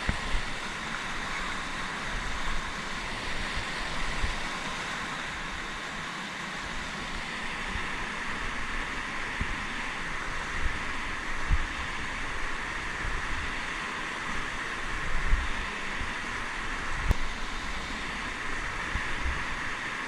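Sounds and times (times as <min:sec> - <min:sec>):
fast river rushing: 0:00.0 - 0:20.0
wind buffeting microphone: 0:07.0 - 0:13.6.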